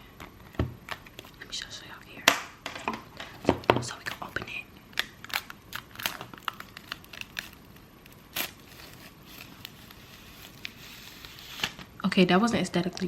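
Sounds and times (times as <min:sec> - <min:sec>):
packaging crinkling: 0:00.2 - 0:01.4, 0:03.0 - 0:11.9
packaging tearing: 0:03.3 - 0:11.9.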